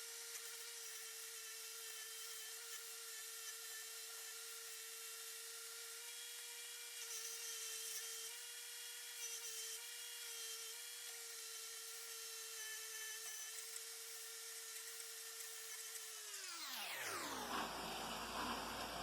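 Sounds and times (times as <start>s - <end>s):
power tool motor running: 0.0s - 19.0s
grinding hiss: 17.4s - 19.0s.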